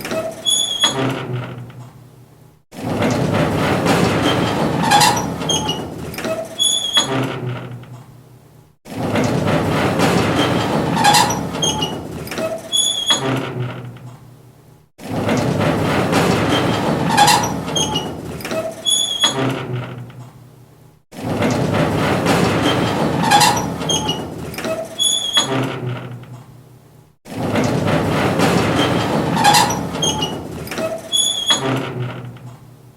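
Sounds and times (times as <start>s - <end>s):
gate squeaks: 0.0s - 1.7s, 3.5s - 7.9s, 9.6s - 14.0s, 15.4s - 20.1s, 21.8s - 26.2s, 27.5s - 32.5s
metal gate grinding open: 0.0s - 1.8s, 2.8s - 8.0s, 8.9s - 14.1s, 15.0s - 20.1s, 21.2s - 26.4s, 27.3s - 32.5s.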